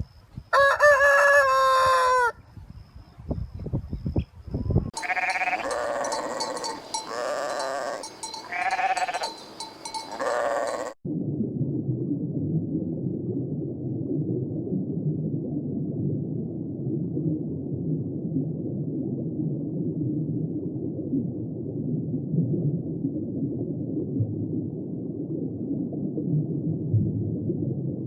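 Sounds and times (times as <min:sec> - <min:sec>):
livestock bleating: 0:05.0 - 0:11.0.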